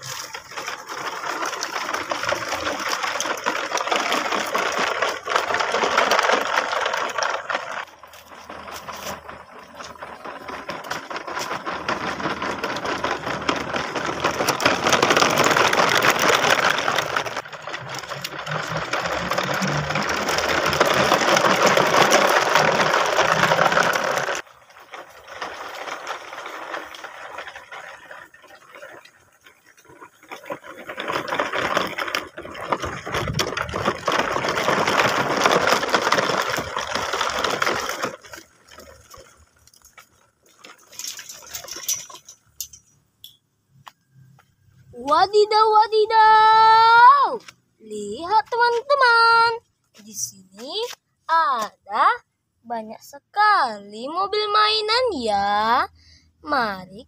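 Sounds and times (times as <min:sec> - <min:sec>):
rattling mechanical whir: 0:00.0 - 0:40.0.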